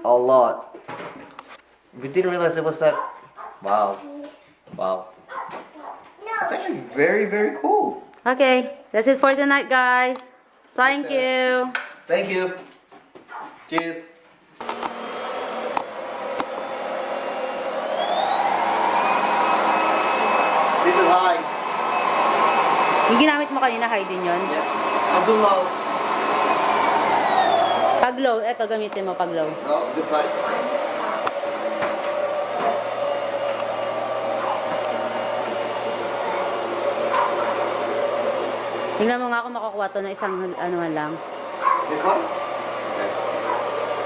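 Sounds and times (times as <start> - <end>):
cordless vacuum motor whine: 14.6 - 44.0.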